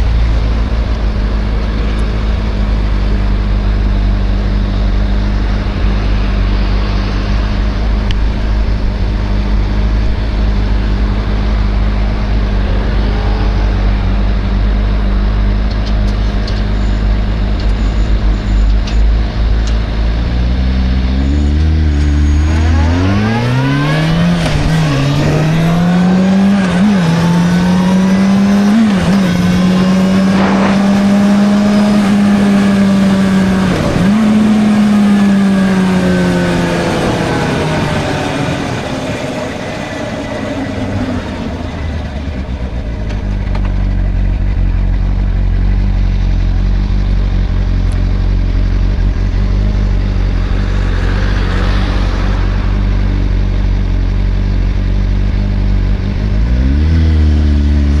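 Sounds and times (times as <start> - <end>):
wind noise: 0.0 - 40.3
gear changes: 0.0 - 56.4
motorcycle engine accelerating: 0.0 - 58.0.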